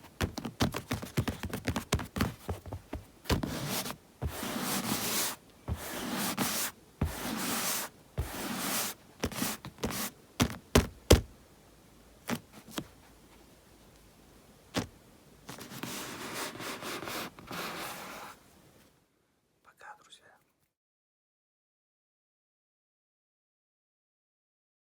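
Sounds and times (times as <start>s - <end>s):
palms rubbing together: 0.2s - 10.6s.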